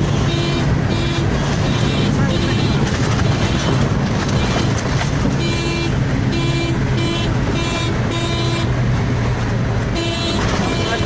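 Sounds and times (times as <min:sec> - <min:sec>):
car engine and road noise: 0:00.0 - 0:11.0.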